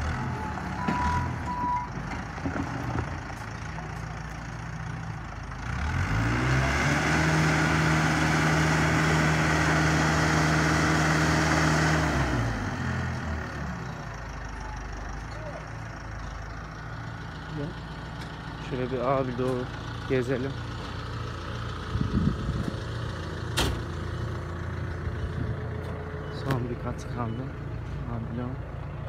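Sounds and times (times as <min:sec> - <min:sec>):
heavy vehicle engine revving: 0:00.0 - 0:28.7.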